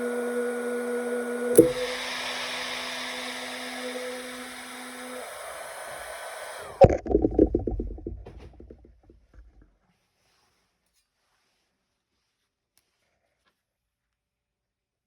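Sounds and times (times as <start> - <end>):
hot-air blower whirring: 0.0 - 6.9
switch click: 1.6 - 1.9
knocks and rattles: 6.8 - 9.7.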